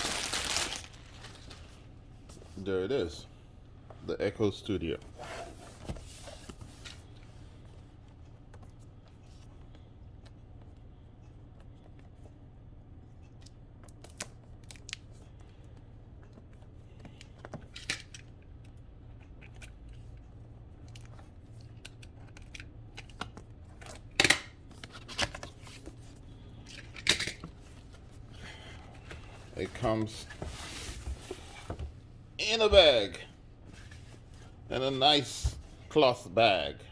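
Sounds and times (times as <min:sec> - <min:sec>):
cardboard clicks and rustles: 0:00.0 - 0:01.8.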